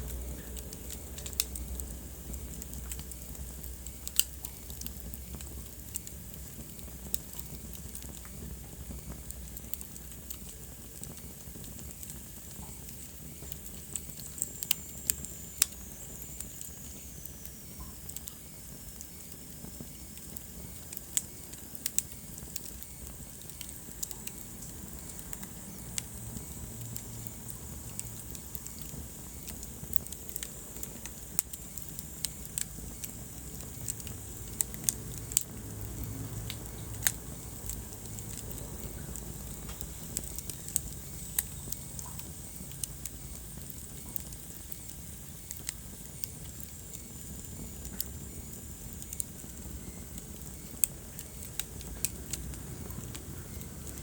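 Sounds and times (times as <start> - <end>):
low fire rumble: 0.0 - 54.0
wood fire crackling and popping: 0.0 - 54.0.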